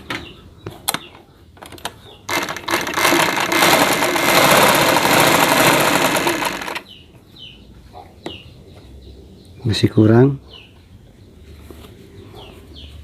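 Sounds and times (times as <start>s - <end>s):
sewing machine running: 2.3s - 6.9s.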